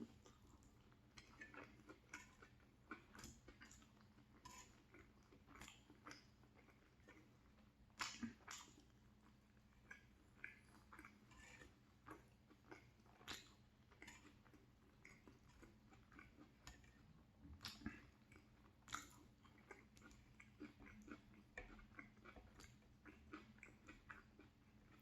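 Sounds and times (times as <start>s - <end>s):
person chewing food: 0.0s - 25.0s.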